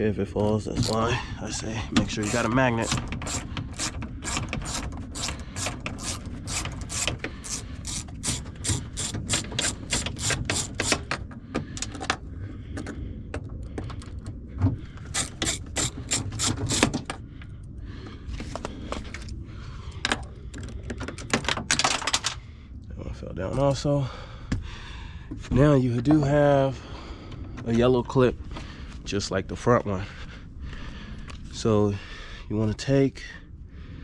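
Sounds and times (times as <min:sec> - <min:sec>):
hand ratchet clicking: 0:02.0 - 0:11.2, 0:15.1 - 0:17.0.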